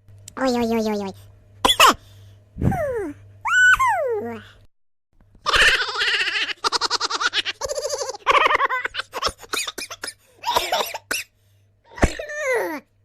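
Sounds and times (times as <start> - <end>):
person laughing: 5.4 - 9.5.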